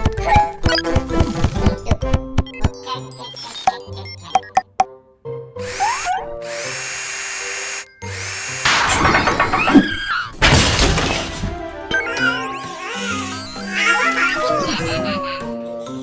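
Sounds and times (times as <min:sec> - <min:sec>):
cartoon background music: 0:00.0 - 0:16.0
power tool sound effects: 0:05.6 - 0:15.2
loud noisy burst: 0:08.1 - 0:13.7.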